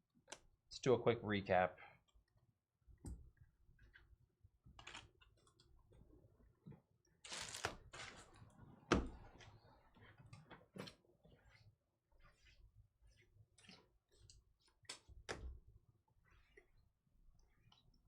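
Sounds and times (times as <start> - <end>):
cards sliding rustle: 7.3 - 8.4.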